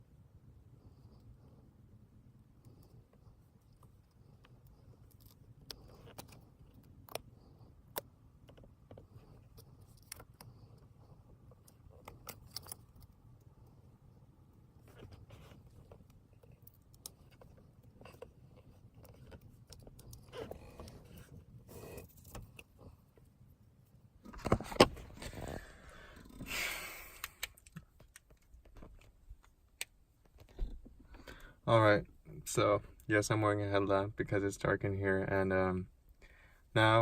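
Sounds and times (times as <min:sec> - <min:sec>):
small clicks and taps: 0:27.2 - 0:31.5.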